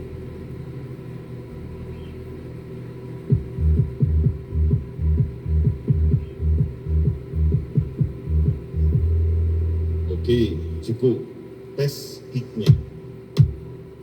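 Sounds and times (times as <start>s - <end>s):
deep bass hum: 1.5s - 11.0s
throbbing bass pulses: 3.2s - 10.9s.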